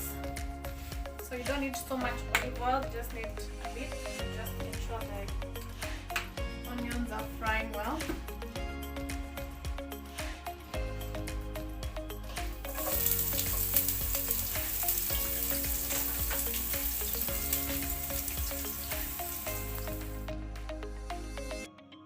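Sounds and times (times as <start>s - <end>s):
soft background music: 0.0s - 22.0s
onions sizzling in a frying pan: 12.7s - 20.2s.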